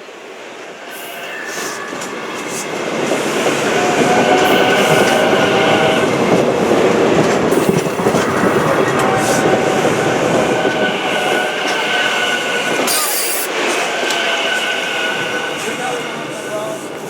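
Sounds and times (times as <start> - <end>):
train wheels clicking over rails: 0.9 - 17.0
high whining tones: 7.5 - 16.8.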